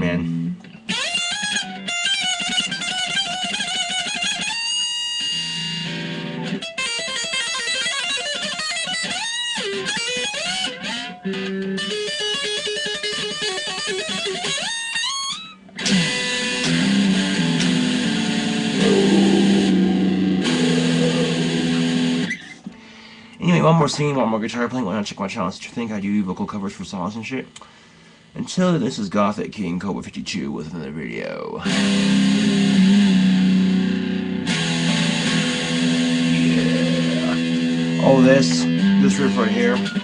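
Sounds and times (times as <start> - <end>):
electric guitar riffs and chords: 18.6 - 22.3.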